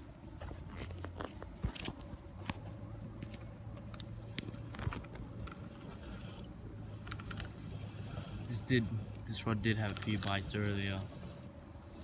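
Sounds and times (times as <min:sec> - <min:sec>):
footsteps on rough ground: 0:00.0 - 0:06.0.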